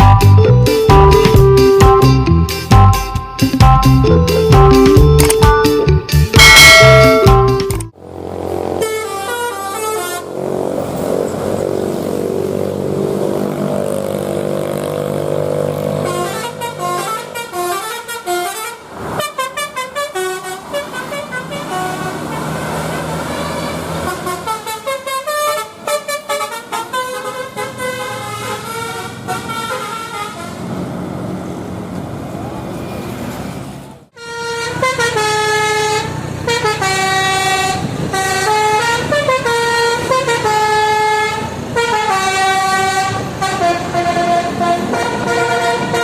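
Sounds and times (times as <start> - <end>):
bus engine droning: 0.0 - 46.0
bus horn playing multi-note tunes: 6.4 - 7.9, 8.6 - 10.8, 15.5 - 30.7, 34.1 - 46.0.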